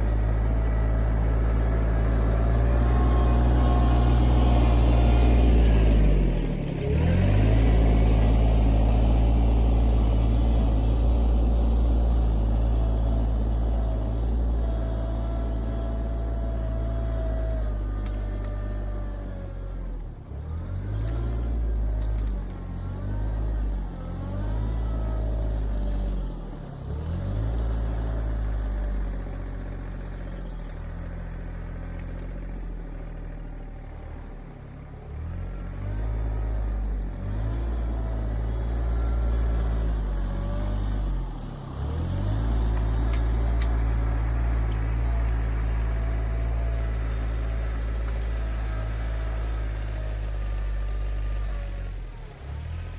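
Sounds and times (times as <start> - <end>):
tractor diesel engine under load: 0.0 - 52.9.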